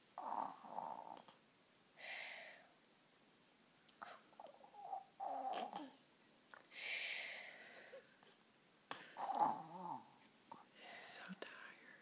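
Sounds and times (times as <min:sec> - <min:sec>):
toddler fake snoring: 0:00.2 - 0:01.4, 0:04.0 - 0:06.0, 0:09.2 - 0:10.2.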